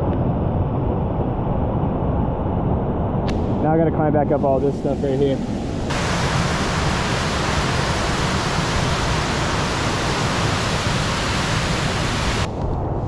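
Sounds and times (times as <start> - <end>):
waterfall rushing: 5.8 - 12.5.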